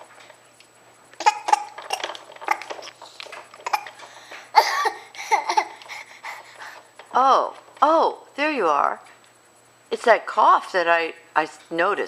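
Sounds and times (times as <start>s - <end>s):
baby babbling: 1.2s - 2.8s, 4.6s - 6.5s
baby coughing: 1.2s - 2.9s, 3.6s - 6.1s.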